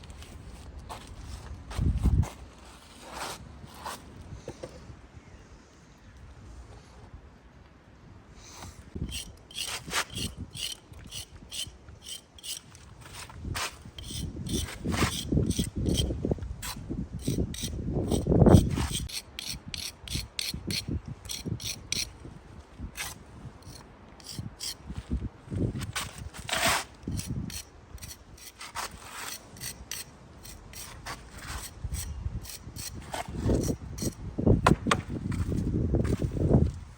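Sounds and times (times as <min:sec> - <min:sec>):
jointing iron scraping mortar: 0:09.0 - 0:22.1.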